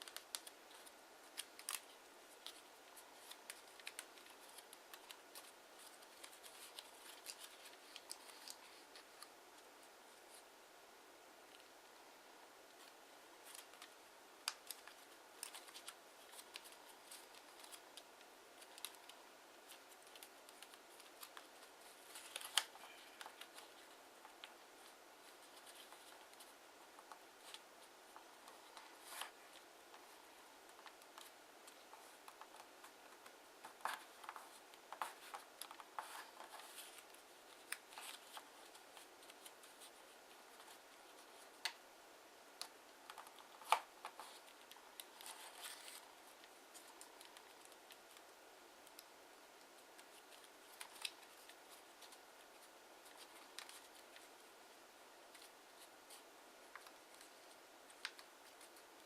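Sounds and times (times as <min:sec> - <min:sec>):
paper rustling and creasing: 0:00.0 - 0:10.4, 0:12.7 - 0:41.8, 0:42.6 - 0:49.1, 0:49.8 - 0:54.5, 0:55.2 - 0:59.0.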